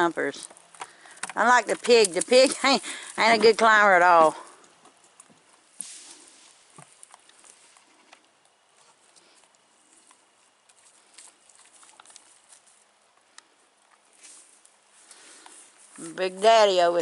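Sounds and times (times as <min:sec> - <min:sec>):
goat hooves tapping: 0:00.0 - 0:05.8.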